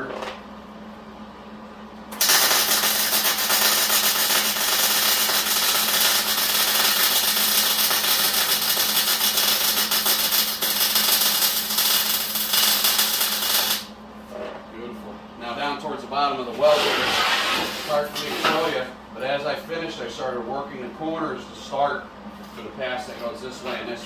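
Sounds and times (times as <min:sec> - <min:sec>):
steady low hum: 0:00.0 - 0:24.0
arc welding crackling sizzle: 0:02.1 - 0:14.0.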